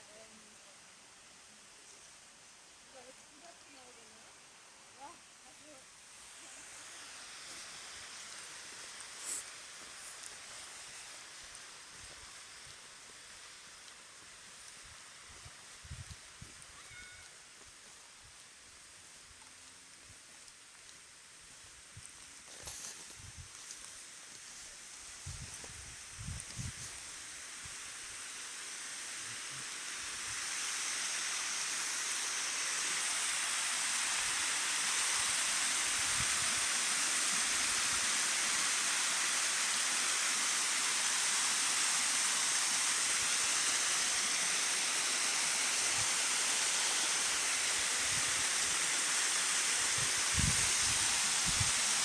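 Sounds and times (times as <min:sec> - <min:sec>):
waterfall rushing: 0:28.6 - 0:52.0.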